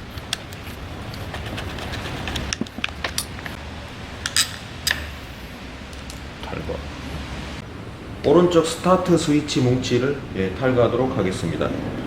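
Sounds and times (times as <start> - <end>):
metal tools clinking: 0.5 - 3.6, 4.2 - 5.1.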